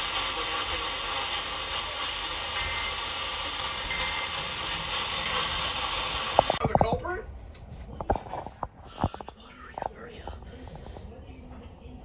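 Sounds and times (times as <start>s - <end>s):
radio static hiss: 0.0s - 7.0s.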